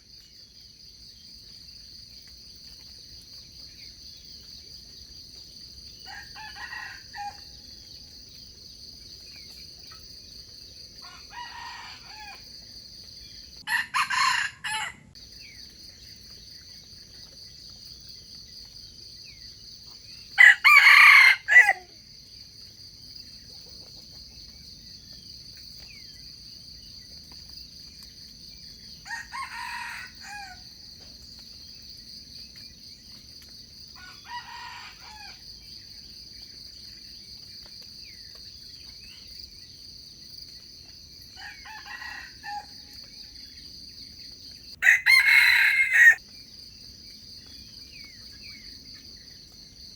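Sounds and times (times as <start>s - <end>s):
insects droning: 0.0s - 49.9s
roosters crowing: 6.1s - 7.6s, 11.0s - 12.5s, 13.7s - 15.1s, 20.4s - 21.9s, 29.0s - 30.7s, 34.0s - 35.4s, 41.4s - 42.8s, 44.8s - 46.2s.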